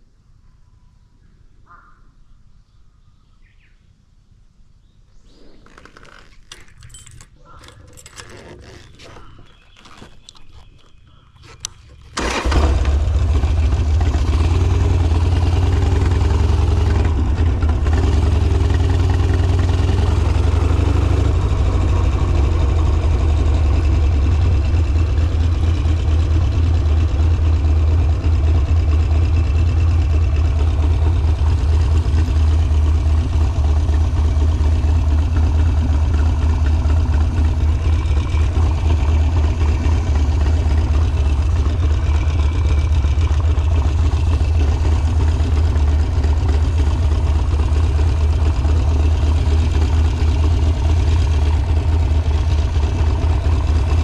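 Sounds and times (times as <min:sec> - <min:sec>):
faint clicks and rustles: 0:05.2 - 0:12.2
motorcycle engine starting and idling: 0:05.6 - 0:54.0.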